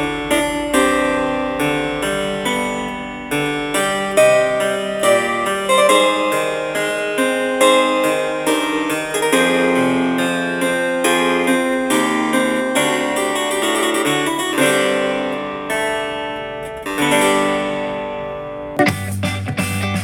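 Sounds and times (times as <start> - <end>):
classical music through speaker: 0.0 - 20.0
pop track with heavy bass: 18.8 - 20.0.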